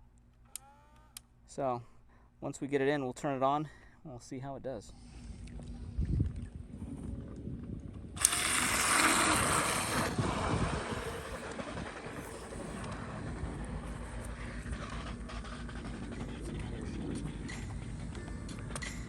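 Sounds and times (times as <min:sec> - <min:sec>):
pool vacuum motor rushing: 0:08.1 - 0:18.7.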